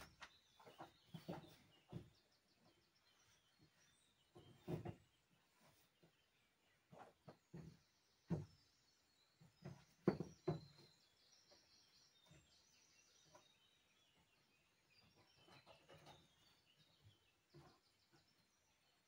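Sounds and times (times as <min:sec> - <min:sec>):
small birds twittering: 0:00.0 - 0:19.0.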